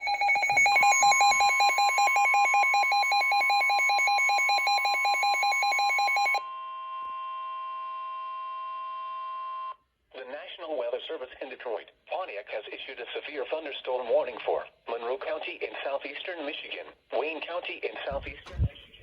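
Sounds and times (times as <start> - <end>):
pulsing electronic warning beep: 0.0 - 6.4
steady alarm tone: 0.0 - 6.6.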